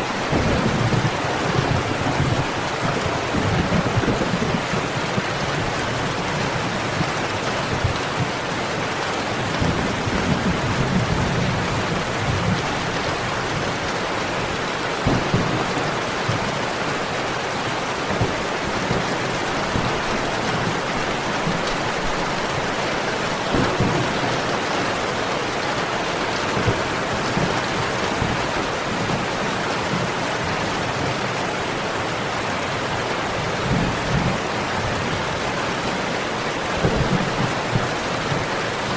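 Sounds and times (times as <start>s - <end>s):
heavy rain falling: 0.0s - 38.9s
thunder rumbling: 0.1s - 16.8s, 18.1s - 30.1s, 36.6s - 38.9s.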